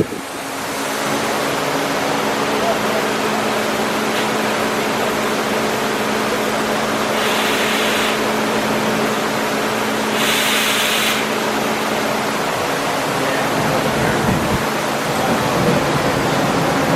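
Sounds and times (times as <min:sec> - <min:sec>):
bursts of hiss: 0:07.1 - 0:08.3, 0:10.1 - 0:11.4.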